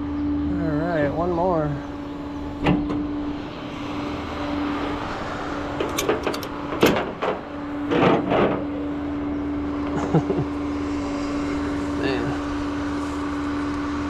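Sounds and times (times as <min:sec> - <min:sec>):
steady low hum: 0:00.0 - 0:14.0
clunks and rattles: 0:02.6 - 0:03.4, 0:04.4 - 0:08.9.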